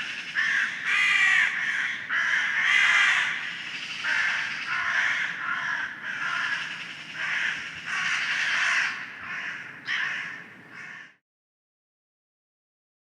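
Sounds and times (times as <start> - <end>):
crows cawing: 0.0 - 11.2.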